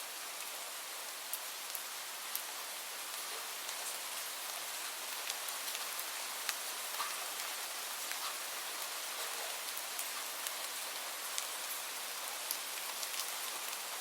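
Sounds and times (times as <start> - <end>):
light rain hissing: 0.0 - 14.0.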